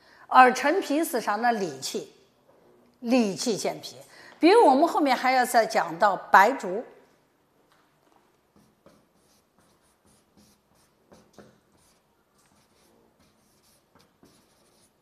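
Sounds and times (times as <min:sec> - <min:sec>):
chalk scratching on blackboard: 0:08.5 - 0:15.0.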